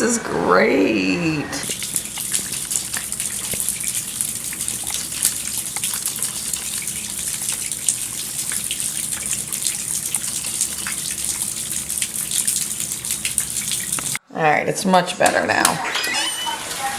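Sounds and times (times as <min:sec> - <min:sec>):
raindrops ticking on surfaces: 0:01.6 - 0:14.2
heavy rain pouring: 0:16.0 - 0:16.9.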